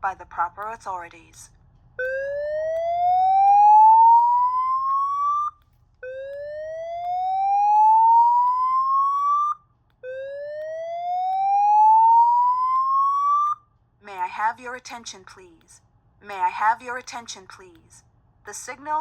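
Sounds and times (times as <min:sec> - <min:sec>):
fire alarm whoop tone: 0:02.0 - 0:13.6.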